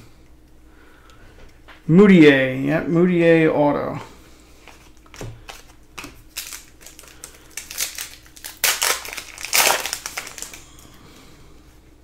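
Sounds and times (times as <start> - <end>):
cards being handled: 4.6 - 10.7
card wrappers crinkling: 4.6 - 10.9.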